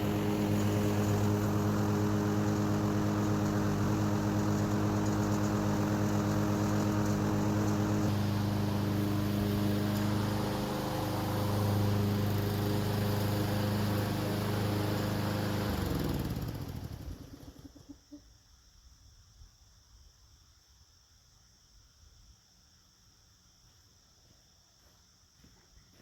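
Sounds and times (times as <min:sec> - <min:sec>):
lawn mower engine running: 0:00.0 - 0:17.7.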